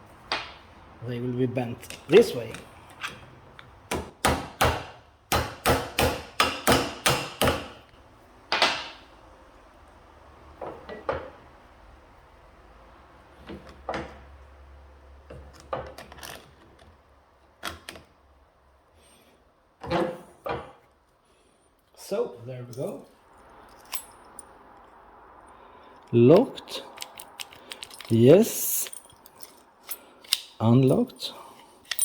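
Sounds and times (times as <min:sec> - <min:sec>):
parts clicking and knocking: 0:00.2 - 0:00.6, 0:15.2 - 0:18.2, 0:26.0 - 0:31.0, 0:31.6 - 0:32.0.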